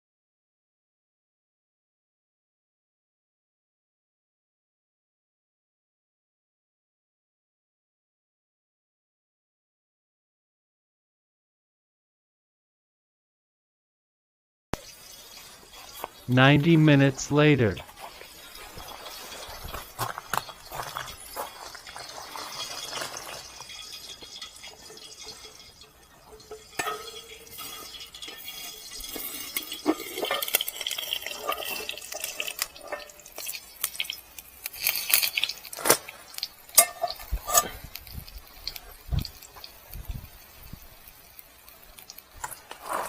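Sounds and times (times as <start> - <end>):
water dripping: 14.8 - 42.8
cookware clinking and knocking: 26.2 - 33.6, 36.8 - 37.8.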